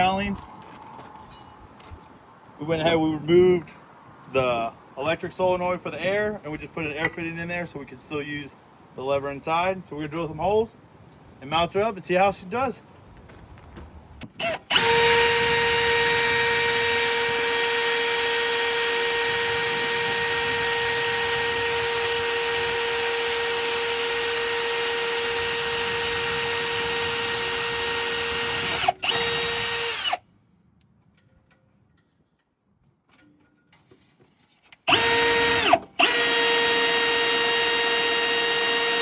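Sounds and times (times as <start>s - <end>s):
power drill whining: 14.4s - 30.2s, 34.9s - 39.0s.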